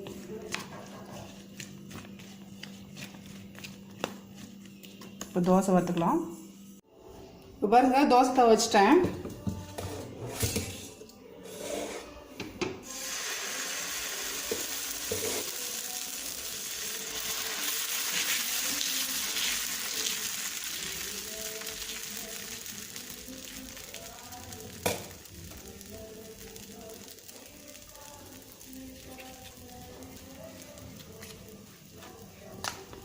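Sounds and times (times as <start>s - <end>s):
batter sizzling on a hot pan: 12.8s - 33.0s.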